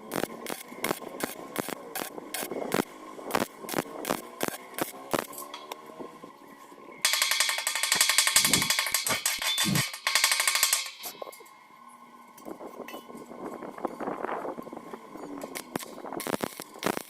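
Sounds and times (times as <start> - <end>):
welding arc crackling: 0.0 - 5.9, 7.0 - 11.6, 15.4 - 17.0.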